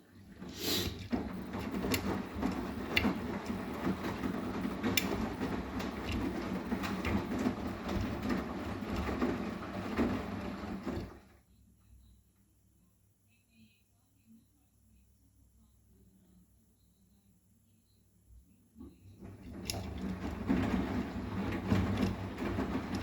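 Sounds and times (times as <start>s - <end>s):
washing machine drum turning: 0.1s - 11.3s, 19.2s - 23.0s
laundry clicks and knocks: 0.2s - 11.3s, 19.2s - 23.0s.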